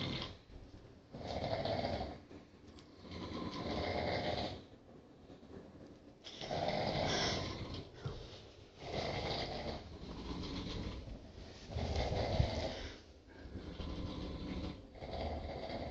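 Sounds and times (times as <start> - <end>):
people snoring: 0.0 - 0.4, 1.2 - 2.2, 2.9 - 4.7, 6.4 - 7.9, 8.8 - 15.9
quiet breathing: 1.1 - 15.9.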